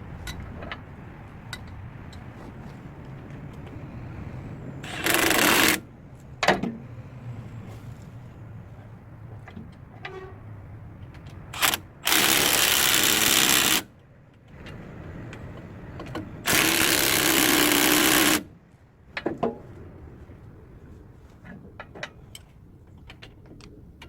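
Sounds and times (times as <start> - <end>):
power tool running: 4.8 - 5.8, 11.6 - 13.8, 16.5 - 18.4.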